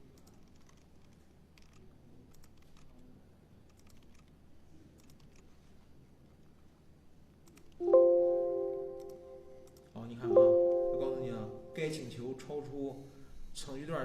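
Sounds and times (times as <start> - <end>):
computer keys typing: 0.2 - 2.9, 3.7 - 4.3, 5.0 - 5.4, 7.4 - 12.1
low steady hum: 7.8 - 12.8.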